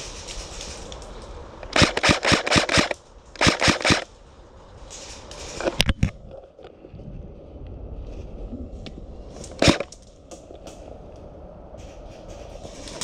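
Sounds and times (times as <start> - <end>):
airsoft rifle firing bursts: 1.7 - 4.1, 9.6 - 9.9.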